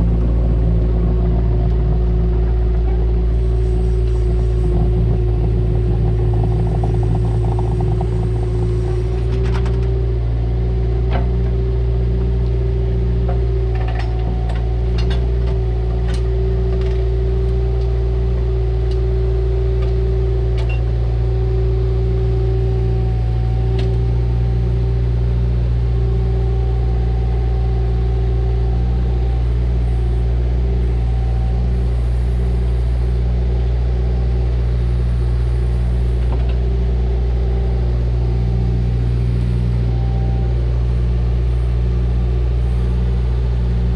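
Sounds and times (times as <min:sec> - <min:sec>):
steady whine: 0:00.0 - 0:10.1
diesel engine running: 0:00.0 - 0:43.9.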